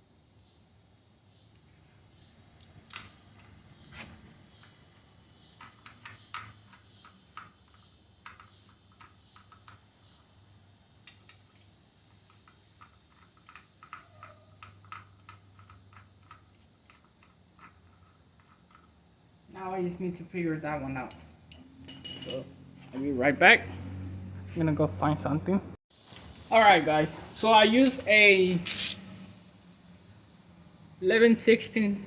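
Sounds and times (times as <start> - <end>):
hand tools clicking and tapping: 5.6 - 9.9, 11.1 - 19.0.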